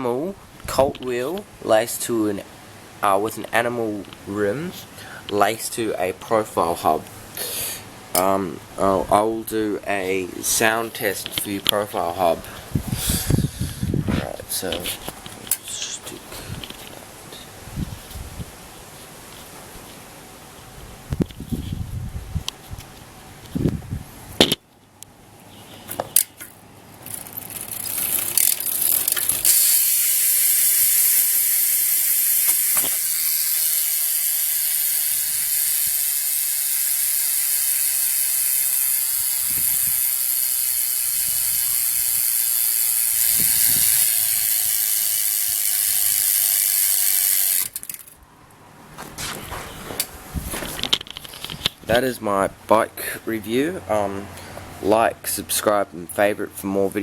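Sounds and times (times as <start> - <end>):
bike hub ratchet clicking: 26.0 - 48.1.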